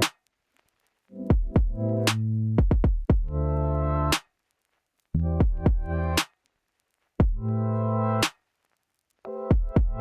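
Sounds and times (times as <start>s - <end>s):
drum machine hits: 1.3s - 1.8s, 2.6s - 3.3s, 5.4s - 5.9s, 7.2s - 7.4s, 9.5s - 10.0s.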